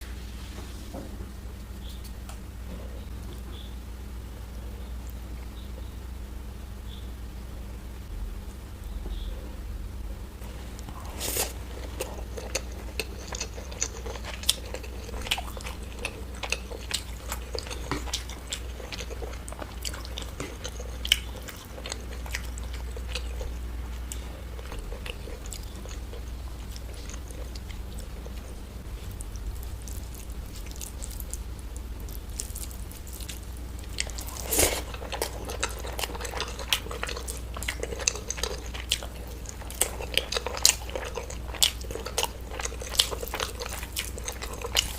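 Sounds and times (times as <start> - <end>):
low steady hum: 0.0 - 44.9
crunchy eating: 10.3 - 44.9.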